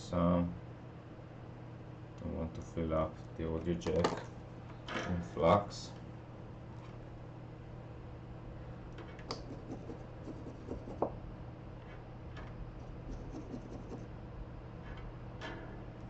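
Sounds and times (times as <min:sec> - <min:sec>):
low hum: 0:04.3 - 0:16.0
soldering tools scratching: 0:09.4 - 0:11.0, 0:12.8 - 0:14.1.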